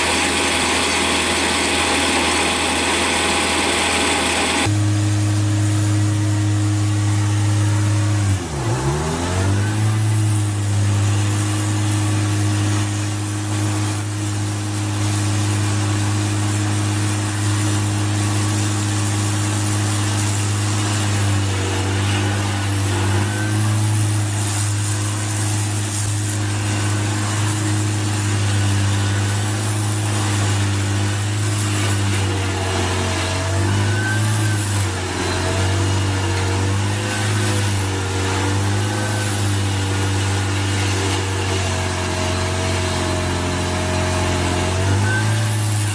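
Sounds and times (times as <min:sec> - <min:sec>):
heavy machine engine running: 0:00.0 - 0:45.9.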